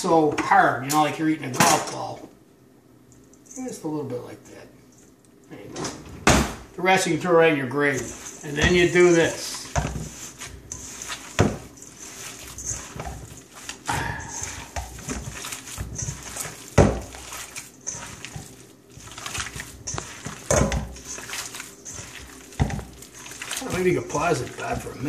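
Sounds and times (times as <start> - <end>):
wet squishing of kneaded meat: 6.8 - 25.0.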